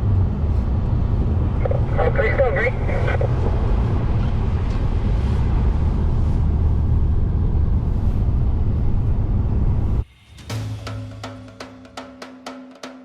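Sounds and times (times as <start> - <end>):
wind noise: 0.0 - 10.0
vehicle engine and road rumble: 0.0 - 10.1.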